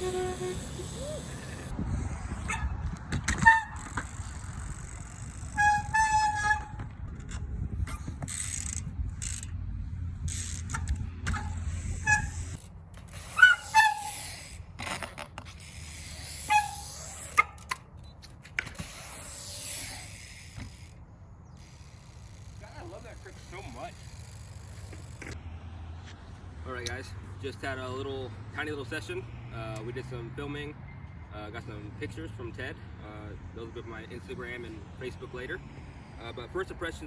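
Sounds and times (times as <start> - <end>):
bike tyres rolling and squeaking: 0.0 - 25.4.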